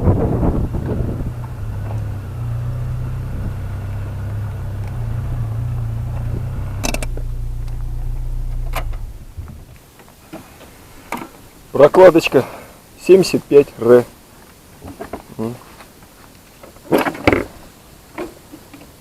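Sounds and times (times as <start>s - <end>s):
car engine and road drone: 0.0s - 9.8s.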